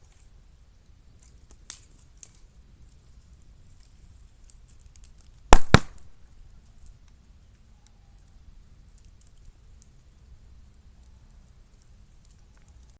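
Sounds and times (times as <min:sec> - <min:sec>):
bamboo crackling in fire: 0:00.0 - 0:12.9
bamboo bursting with sharp bangs: 0:05.5 - 0:06.2.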